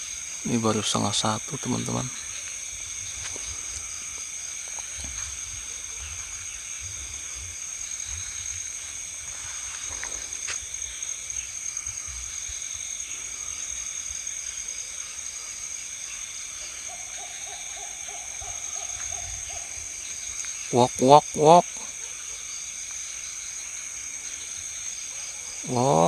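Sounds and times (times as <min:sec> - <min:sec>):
night insects chirring: 0:00.0 - 0:26.0
owl hooting: 0:16.6 - 0:22.5.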